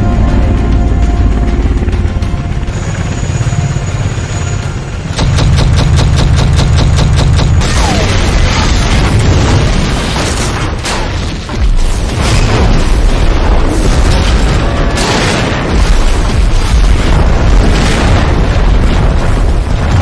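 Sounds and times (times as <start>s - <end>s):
explosion-like rumbling and blasts: 5.2s - 20.0s.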